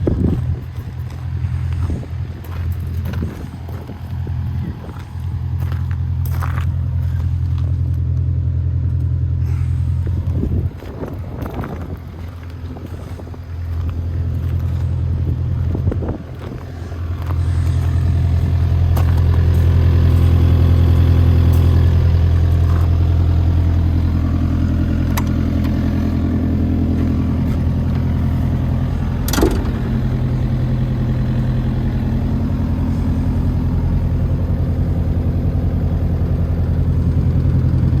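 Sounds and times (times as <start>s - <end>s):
excavator diesel engine running: 0.0s - 38.0s
clicks and clanks: 29.2s - 29.9s.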